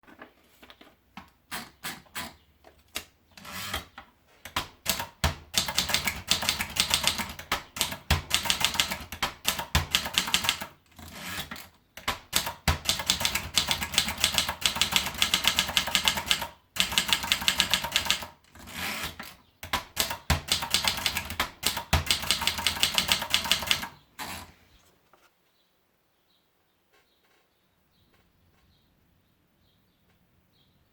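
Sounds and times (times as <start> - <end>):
typewriter key strikes: 12.0 - 18.3, 19.0 - 23.9.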